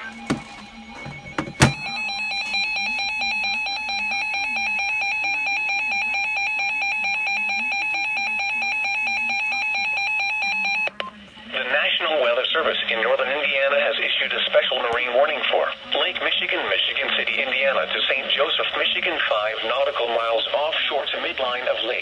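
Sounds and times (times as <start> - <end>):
electronic alarm beeping: 0.0 - 11.0.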